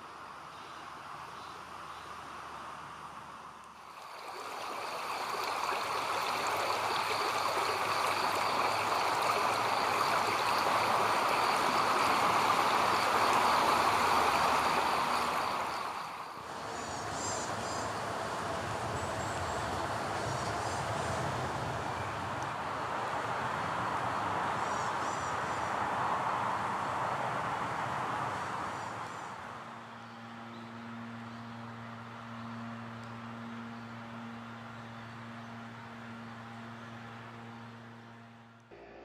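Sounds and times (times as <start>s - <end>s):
stream of water rushing: 1.1s - 29.8s.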